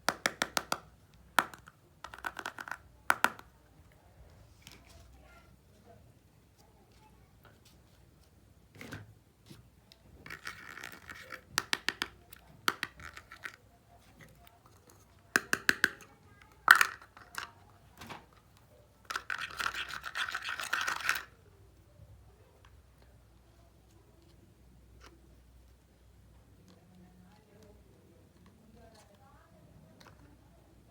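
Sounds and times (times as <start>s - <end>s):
toy kitchenware clicking and scraping: 0.1s - 3.5s, 9.6s - 21.4s.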